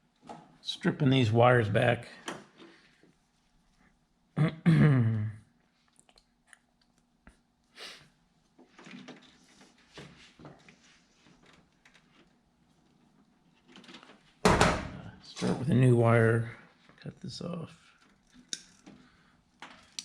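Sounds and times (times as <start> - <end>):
wire strippers clicking and scraping: 10.4 - 14.3, 17.1 - 20.0.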